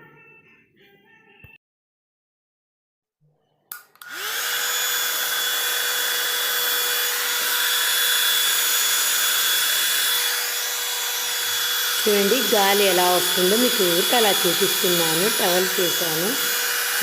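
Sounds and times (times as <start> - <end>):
hair dryer switch click: 3.7 - 4.3
hair dryer blowing: 4.0 - 17.0.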